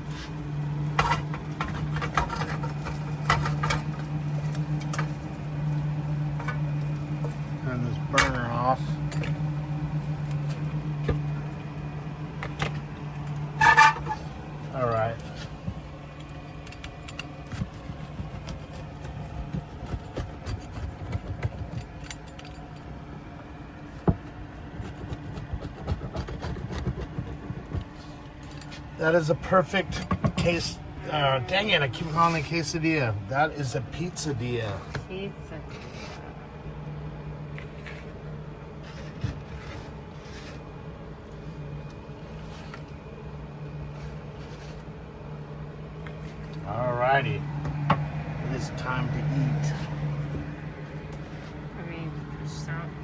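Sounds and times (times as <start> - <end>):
steady low hum: 0.0 - 53.0
knife scraping a pan: 35.7 - 36.2.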